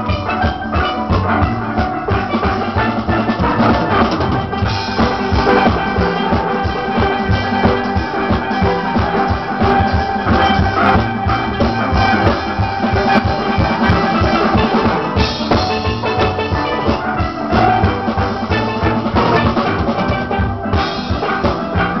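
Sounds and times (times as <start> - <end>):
drum kit beat: 0.0 - 22.0
steelpans playing melody: 0.0 - 22.0.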